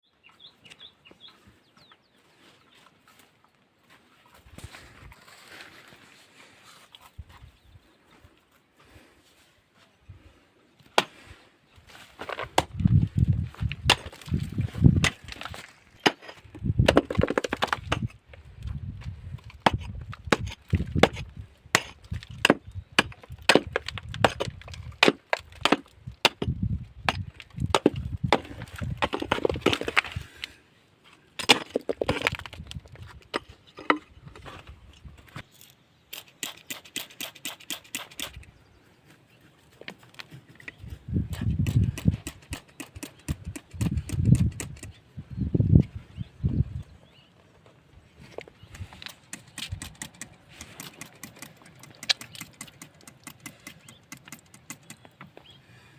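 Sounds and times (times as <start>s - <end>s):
rock being struck and broken: 13.6s - 18.2s, 19.5s - 30.2s, 31.4s - 33.4s.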